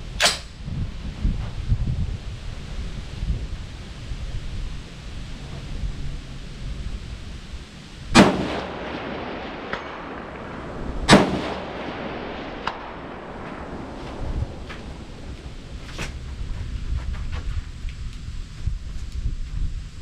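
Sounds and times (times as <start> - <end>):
bullet pinging steel target: 0.2 - 0.6
rifle shots: 8.1 - 16.1.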